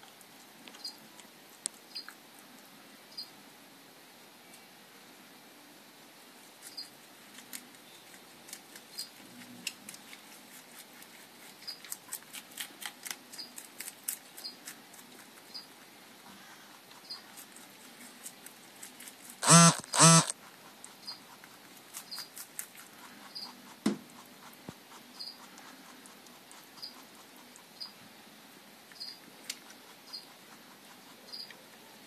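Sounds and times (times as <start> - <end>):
rabbit chewing leaves: 0.0 - 3.5, 6.2 - 32.0
short loud pitched sounds: 19.4 - 20.3.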